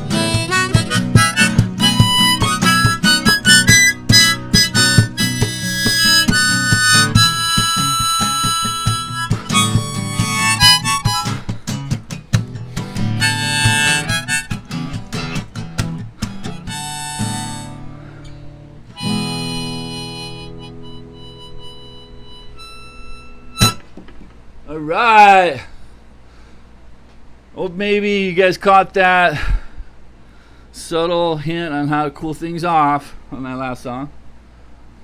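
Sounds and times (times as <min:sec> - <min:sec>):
harmonica solo: 0:00.0 - 0:23.8
strummed acoustic guitar: 0:00.0 - 0:24.0.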